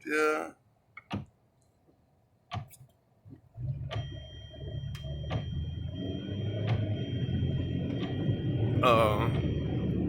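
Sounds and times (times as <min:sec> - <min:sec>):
engine and road rumble: 0:02.4 - 0:10.0.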